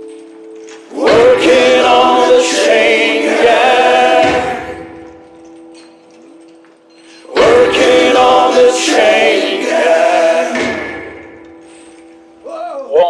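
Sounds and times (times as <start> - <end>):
choir singing: 0.9 - 5.2, 7.3 - 11.7.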